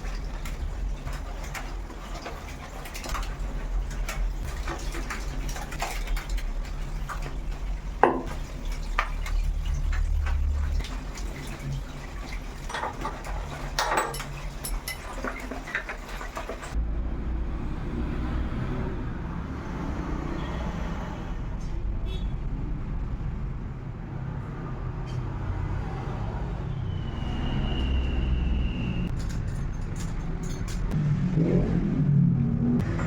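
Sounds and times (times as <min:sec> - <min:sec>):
metal tools clinking: 0:12.7 - 0:16.7, 0:29.1 - 0:31.0.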